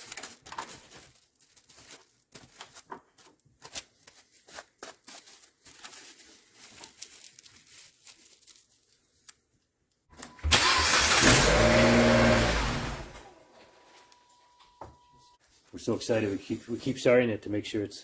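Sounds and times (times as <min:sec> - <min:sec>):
faint handling sounds: 0:00.0 - 0:10.1, 0:13.5 - 0:17.6
car engine cranking and starting: 0:10.2 - 0:13.8.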